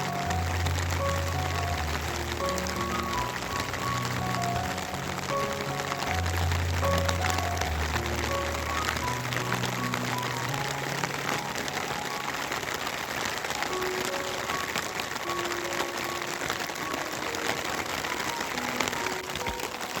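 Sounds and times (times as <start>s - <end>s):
quiet background music: 0.0s - 12.6s
steady rain falling: 0.0s - 20.0s.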